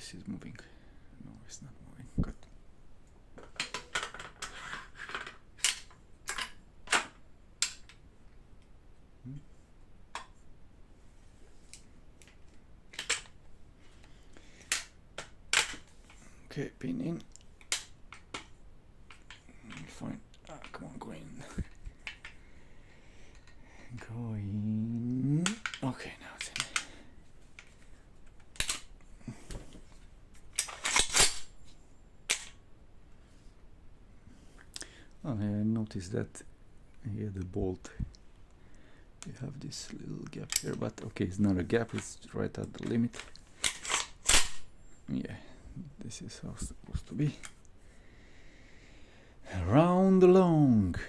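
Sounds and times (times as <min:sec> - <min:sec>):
rifle parts clicking and knocking: 0:03.4 - 0:08.0, 0:10.1 - 0:10.4, 0:11.7 - 0:13.4, 0:14.0 - 0:16.2, 0:17.3 - 0:20.8, 0:25.4 - 0:25.8, 0:26.4 - 0:31.6, 0:32.3 - 0:32.6, 0:40.5 - 0:41.0, 0:41.7 - 0:44.7.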